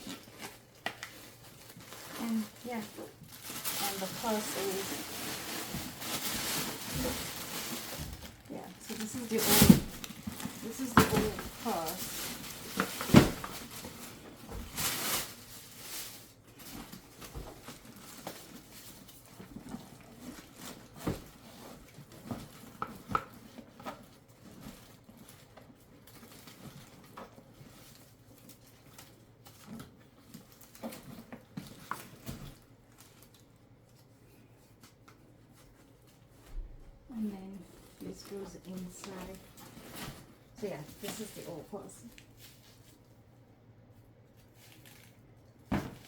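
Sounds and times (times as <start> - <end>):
packaging rustling: 0.0 - 34.1.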